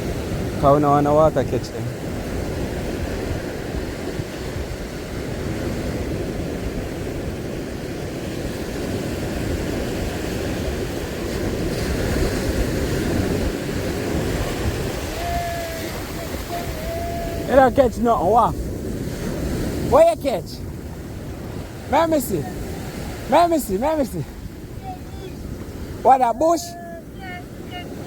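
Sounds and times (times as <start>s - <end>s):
sea surf washing on shore: 0.0s - 28.0s
wind on microphone: 0.0s - 28.0s.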